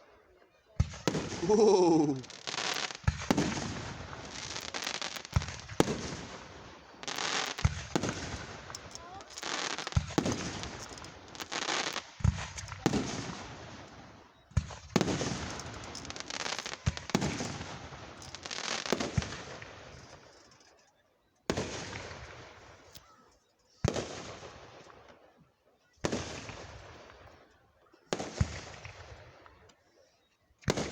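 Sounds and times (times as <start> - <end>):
firework shells booming: 0.8 - 13.9.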